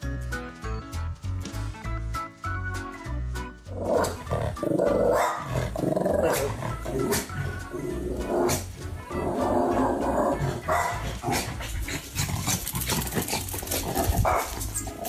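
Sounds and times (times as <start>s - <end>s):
music: 0.0s - 15.0s
dog barking: 5.1s - 5.6s, 6.2s - 7.4s, 10.6s - 11.6s, 14.2s - 14.6s.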